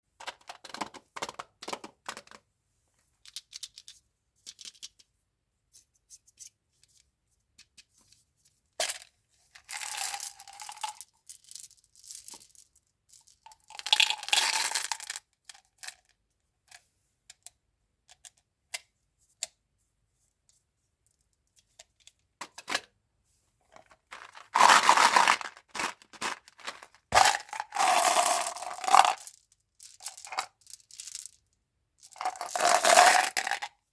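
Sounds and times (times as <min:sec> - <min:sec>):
candy wrapper rustling and tearing: 0:24.1 - 0:31.4, 0:32.1 - 0:33.7.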